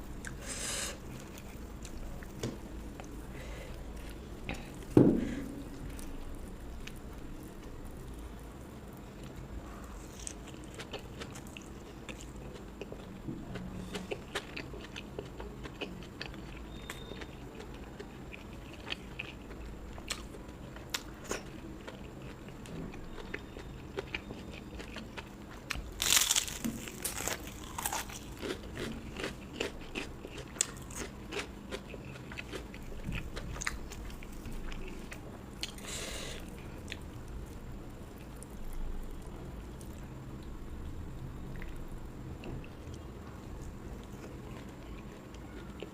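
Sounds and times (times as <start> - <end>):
person chewing with mouth clicks: 23.1 - 37.2
crunchy bites of fried food: 25.7 - 37.1.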